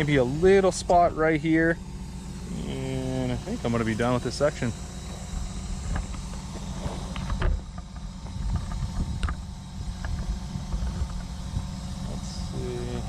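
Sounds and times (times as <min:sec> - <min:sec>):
excavator diesel engine running: 0:00.0 - 0:13.0.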